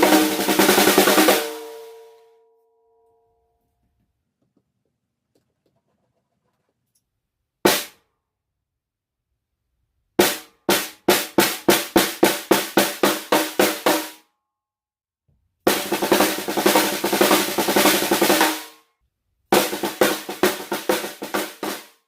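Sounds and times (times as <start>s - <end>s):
snare drum strokes and rolls: 0.0s - 1.8s, 7.7s - 7.9s, 10.2s - 14.2s, 15.7s - 18.7s, 19.6s - 22.0s.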